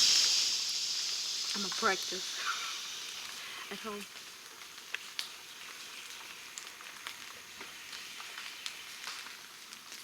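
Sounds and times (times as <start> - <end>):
faint outdoor hiss: 0.0 - 10.0
small ticks and clicks: 4.1 - 10.0.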